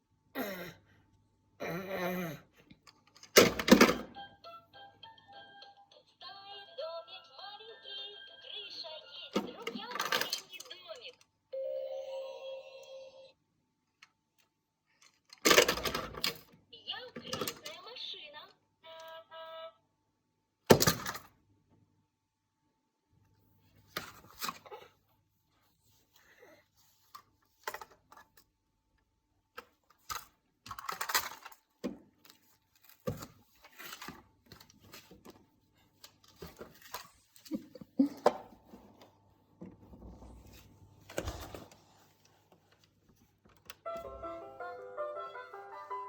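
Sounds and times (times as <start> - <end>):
child handling rattling toys: 9.3 - 11.2, 15.0 - 16.5, 29.6 - 39.0.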